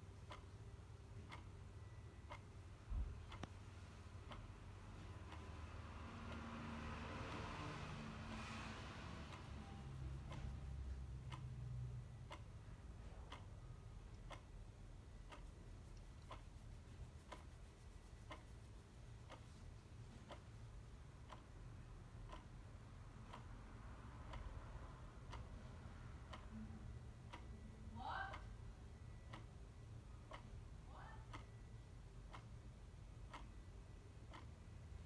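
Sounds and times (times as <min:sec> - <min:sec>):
clock ticking faintly: 0:00.0 - 0:35.0
steady low hum: 0:00.0 - 0:35.0.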